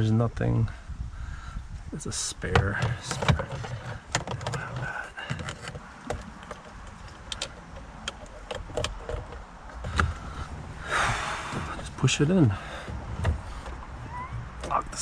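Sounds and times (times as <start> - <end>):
hands clicking car parts: 2.5 - 10.3, 12.7 - 15.0.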